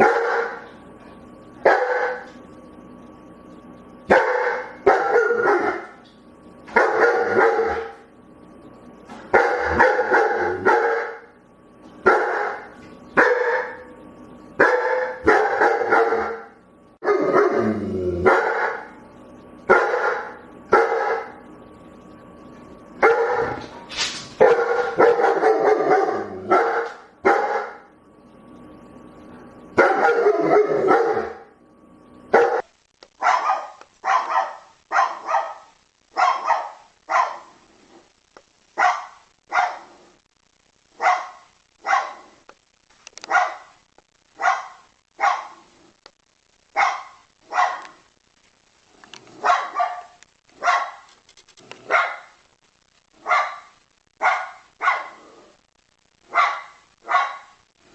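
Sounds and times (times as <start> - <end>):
dog barking: 0.0 - 0.7, 1.6 - 2.3, 4.1 - 6.0, 6.7 - 8.0, 9.3 - 11.3, 12.0 - 13.9, 14.6 - 17.6, 18.2 - 18.9, 19.7 - 21.4, 23.0 - 23.8, 24.4 - 27.8, 29.8 - 31.4, 32.3 - 37.6, 38.8 - 40.0, 41.0 - 42.3, 43.2 - 43.7, 44.4 - 45.6, 46.8 - 48.0, 49.4 - 51.1, 51.8 - 52.4, 53.2 - 55.2, 56.3 - 57.6
faint steady hum: 0.0 - 57.9.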